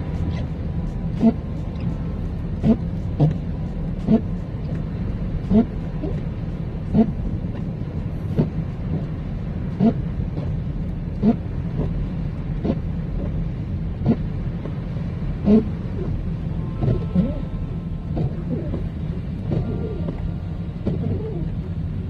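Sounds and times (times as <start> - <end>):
car cabin road rumble: 0.0 - 22.0
windshield wipers squeaking: 0.2 - 2.0, 2.6 - 4.8, 5.4 - 6.2, 6.9 - 7.7, 9.7 - 12.0, 14.0 - 14.4, 15.4 - 21.6.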